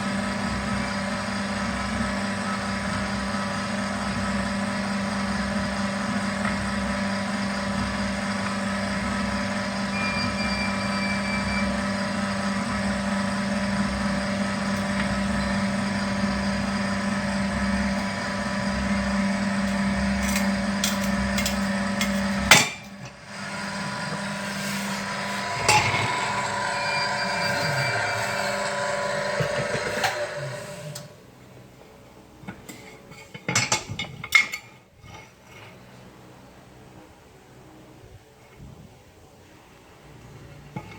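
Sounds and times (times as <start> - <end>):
machine motor humming: 0.1 - 31.3.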